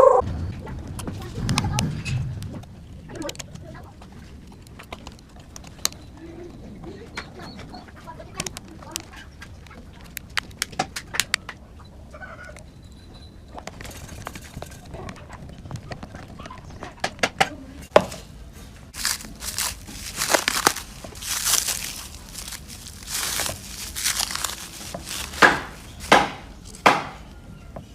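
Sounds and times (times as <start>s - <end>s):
crinkling tearing noise: 8.2s - 11.6s, 18.9s - 27.3s
sharp clicks and taps: 8.4s - 11.6s.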